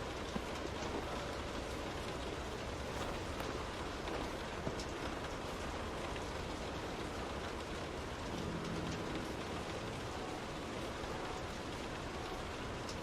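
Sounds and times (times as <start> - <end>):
rain pattering on a window: 0.0 - 13.0.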